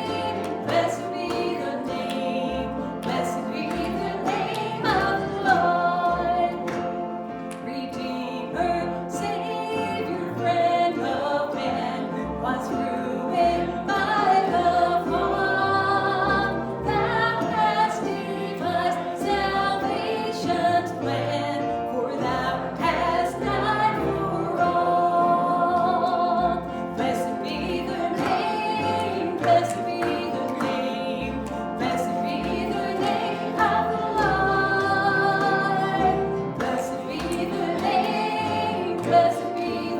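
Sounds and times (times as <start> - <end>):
group singing worship music: 0.0 - 39.9.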